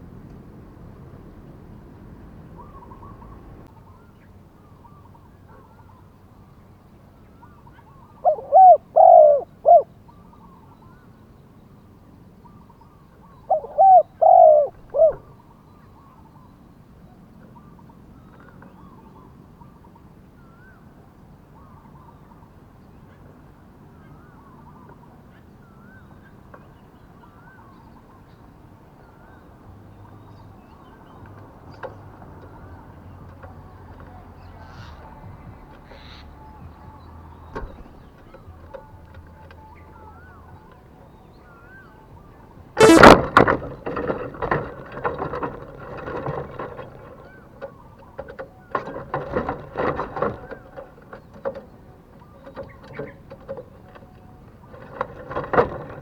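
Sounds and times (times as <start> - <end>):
small birds chirping: 0.8 - 43.1
dove cooing: 2.1 - 3.7, 7.7 - 10.0, 13.3 - 15.4.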